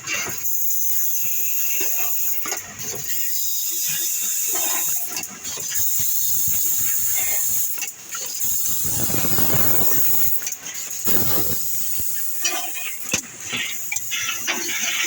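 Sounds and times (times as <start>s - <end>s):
packing machine hissing: 8.3s - 12.4s.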